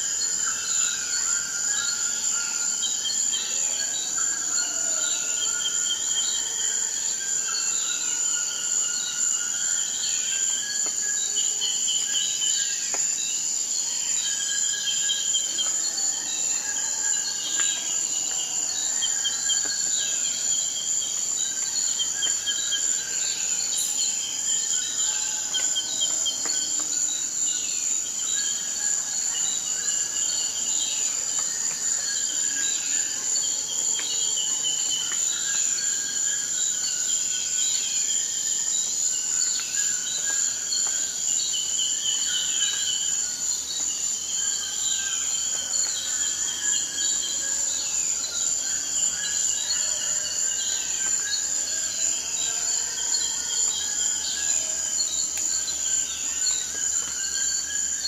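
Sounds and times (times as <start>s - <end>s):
high-pitched insect trill: 0.0s - 58.0s
insects chirping: 0.0s - 58.0s.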